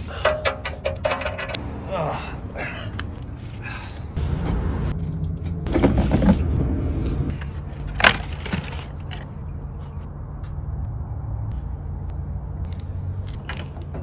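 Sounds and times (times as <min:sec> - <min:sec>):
tools scraping and rustling: 0:00.0 - 0:01.6, 0:03.2 - 0:06.6, 0:07.3 - 0:10.1.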